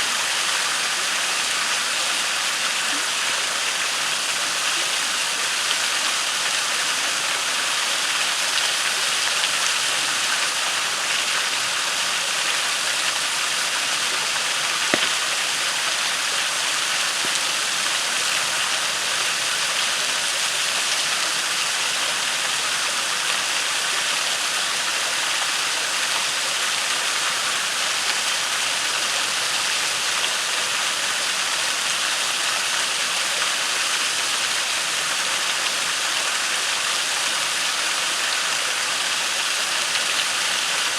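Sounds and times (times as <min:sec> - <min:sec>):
waterfall rushing: 0:00.0 - 0:40.9
campfire pop: 0:14.9 - 0:15.3.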